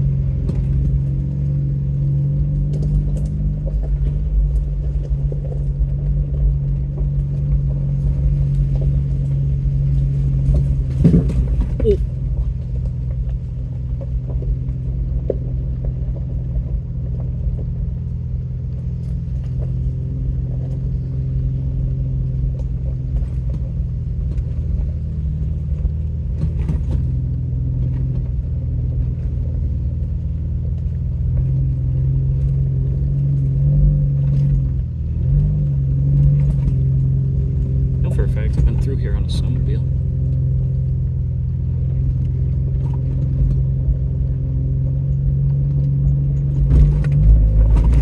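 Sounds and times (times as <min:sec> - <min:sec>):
off-road vehicle engine running: 0:00.0 - 0:48.0
knocks and rattles in cab: 0:02.6 - 0:14.6, 0:36.2 - 0:41.2, 0:41.8 - 0:48.0.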